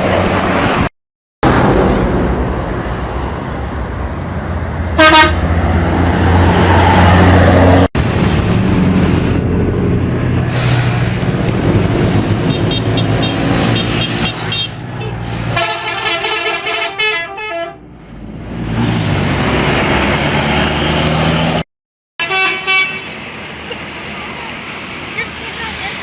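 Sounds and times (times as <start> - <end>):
musical bus air horn: 5.0 - 5.5, 12.6 - 17.8, 22.2 - 23.1.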